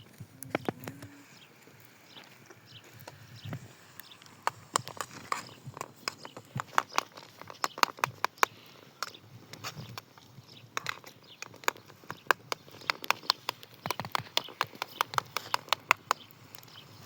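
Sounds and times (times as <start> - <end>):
rapid sharp clicks and taps: 4.0 - 9.2, 10.7 - 16.7.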